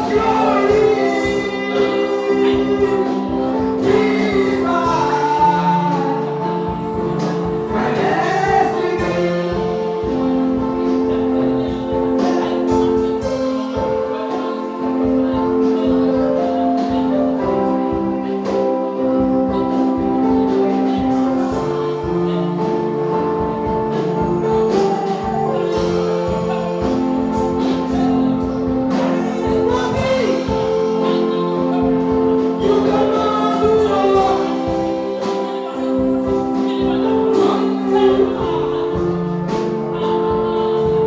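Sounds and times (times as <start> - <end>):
gospel singing: 0.0 - 41.0
steady percussion beat: 0.0 - 41.0
sustained keyboard chords: 0.0 - 41.0.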